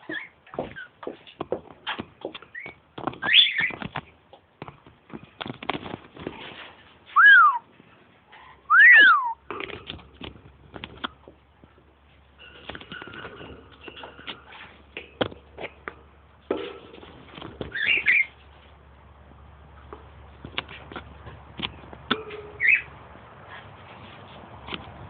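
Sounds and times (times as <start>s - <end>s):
bird chirp: 2.5s - 3.8s, 7.2s - 7.6s, 8.4s - 9.4s, 17.7s - 18.4s, 22.4s - 22.9s
bird whistling: 7.2s - 7.6s, 8.7s - 9.4s.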